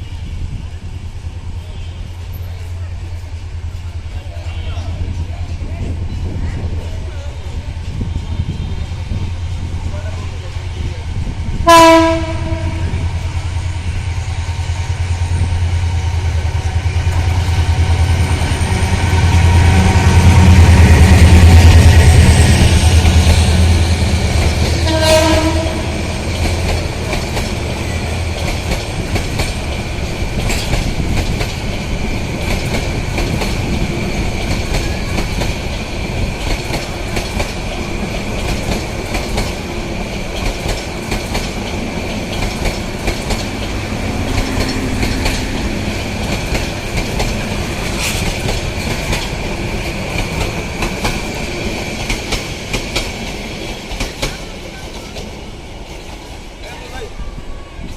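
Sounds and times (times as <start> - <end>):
locomotive engine rumble: 0.1 - 52.8
train horn: 11.6 - 13.1, 24.8 - 26.2
wheels clacking over rail joints: 21.4 - 56.4.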